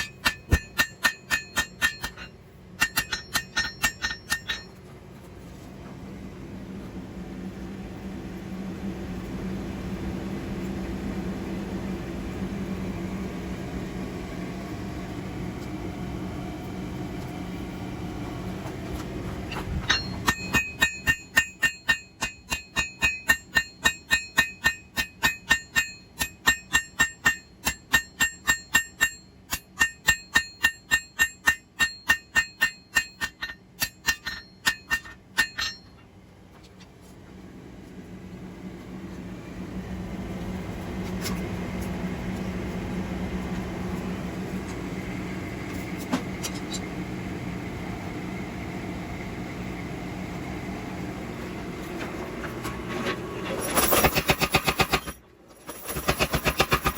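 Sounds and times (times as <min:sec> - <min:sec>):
hammer ringing on anvil: 0:00.0 - 0:04.8, 0:19.9 - 0:36.0.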